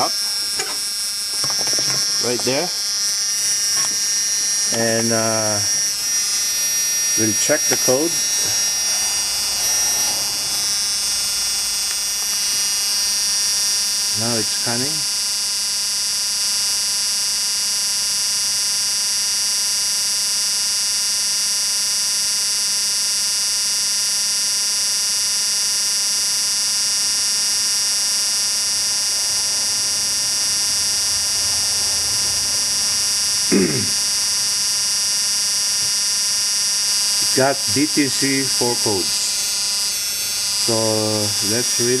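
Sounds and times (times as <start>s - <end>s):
high-pitched electronic tone: 0.0s - 13.2s, 37.1s - 42.0s.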